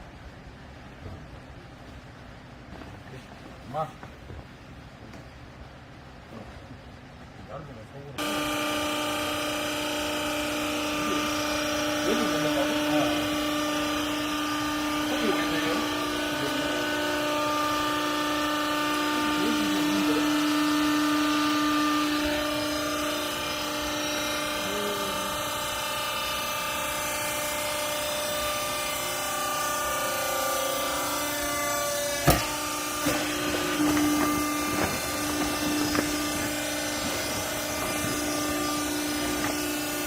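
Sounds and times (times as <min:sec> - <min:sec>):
baler motor whining hum: 0:08.2 - 0:40.0
sharp knock: 0:32.2 - 0:33.2.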